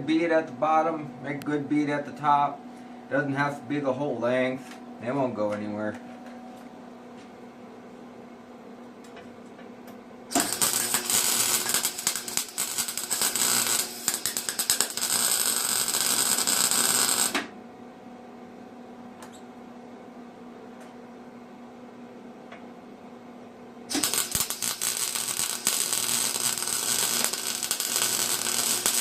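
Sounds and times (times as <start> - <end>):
arc welding crackling: 10.3 - 17.5, 23.9 - 29.0.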